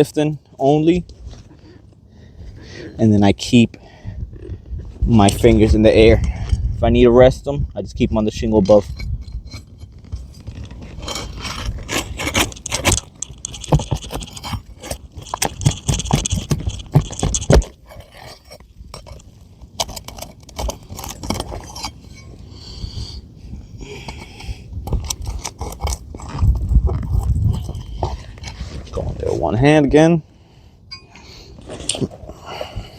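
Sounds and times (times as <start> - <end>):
roof shingles scraping and tearing: 10.0 - 22.0.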